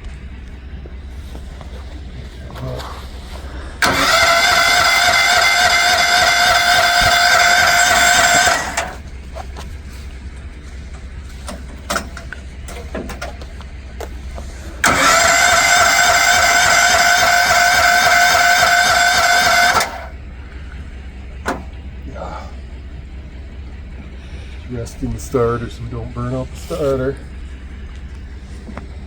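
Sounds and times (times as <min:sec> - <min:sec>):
electric starter cranking engine: 0:02.2 - 0:09.1, 0:14.2 - 0:22.4.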